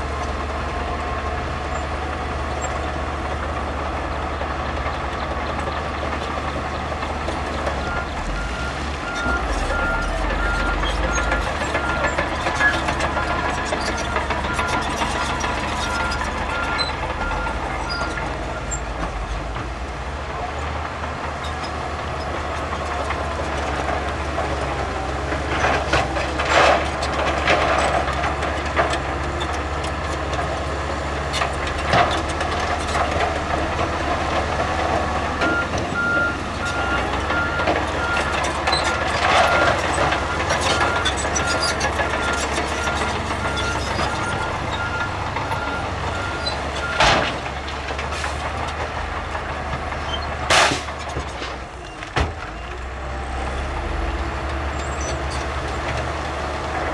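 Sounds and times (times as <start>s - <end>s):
diesel engine running: 0.0s - 56.9s
reversing alarm beeping: 7.6s - 18.8s, 35.4s - 47.1s.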